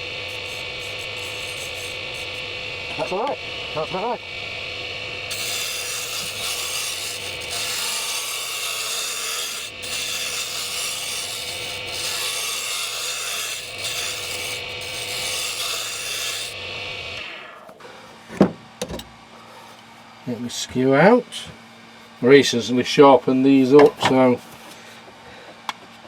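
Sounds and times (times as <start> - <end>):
turning tool scraping wood: 0.0 - 3.4, 5.3 - 17.3
lathe motor hum: 0.0 - 17.8.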